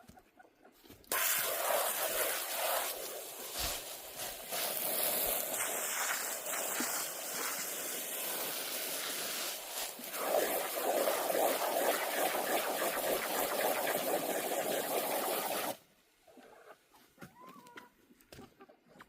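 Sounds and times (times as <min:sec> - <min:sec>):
running water splashing: 0:01.1 - 0:15.8.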